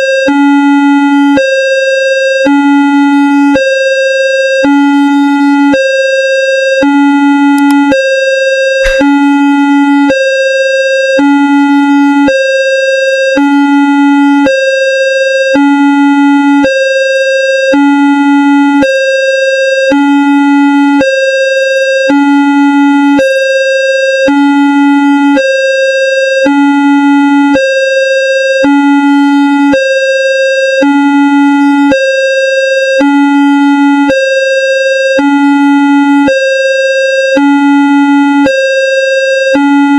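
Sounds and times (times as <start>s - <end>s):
short click: 8.8s - 9.1s.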